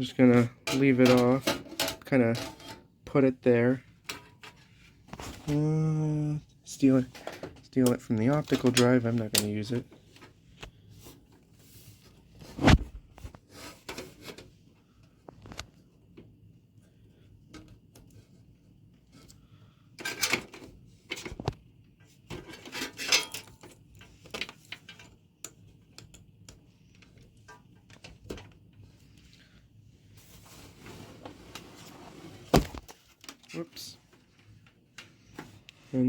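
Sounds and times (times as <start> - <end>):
clatter inside computer case: 0.0 - 5.5, 6.8 - 15.9, 20.0 - 25.3, 30.2 - 35.4.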